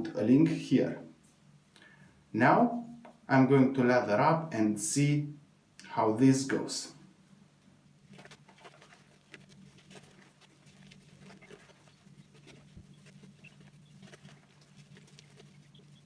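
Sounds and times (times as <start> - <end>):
shaving brush lathering cream: 8.1 - 16.0.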